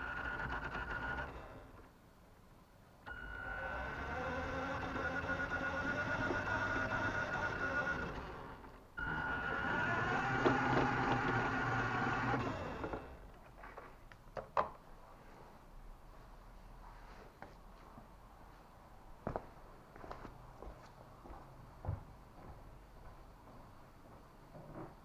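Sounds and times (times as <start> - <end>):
toy car electric motor whining: 0.0 - 1.7, 3.1 - 13.2.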